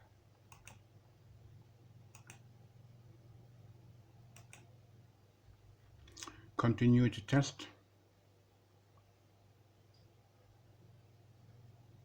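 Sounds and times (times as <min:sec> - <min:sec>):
low steady hum: 0:00.0 - 0:12.0
faint double clicks: 0:04.4 - 0:04.7.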